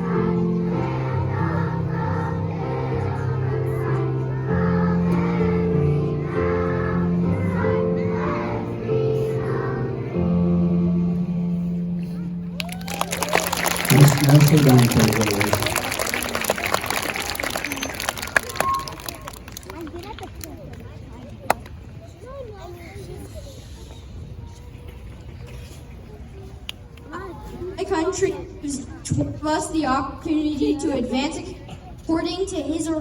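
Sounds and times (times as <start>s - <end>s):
children singing together: 0.0s - 11.1s
audience clapping: 12.6s - 21.7s.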